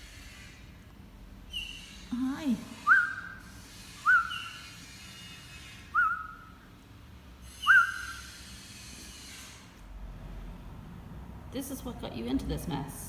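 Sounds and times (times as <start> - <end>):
small bird whistling call: 1.5 - 2.0, 2.8 - 4.8, 5.8 - 6.6, 7.4 - 8.5.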